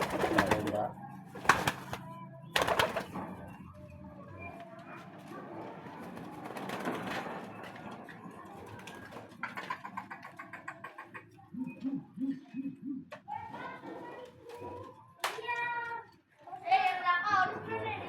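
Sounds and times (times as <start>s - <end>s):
pigeons cooing: 8.4s - 15.0s.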